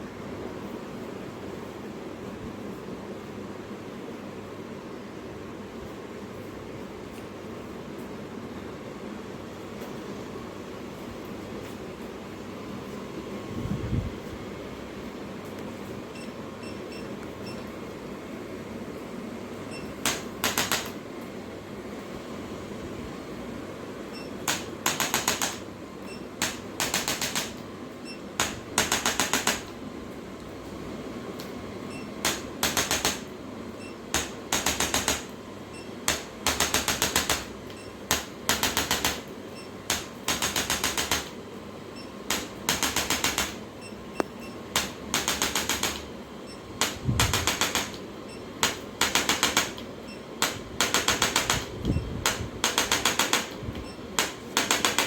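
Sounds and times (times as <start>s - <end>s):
steady background noise: 0.0s - 55.0s
rapid mechanical clicking: 20.0s - 21.0s, 24.4s - 25.7s, 26.4s - 27.6s, 28.4s - 29.8s, 32.2s - 33.3s, 34.1s - 35.4s, 36.1s - 41.4s, 42.3s - 43.6s, 44.2s - 46.2s, 46.8s - 55.0s.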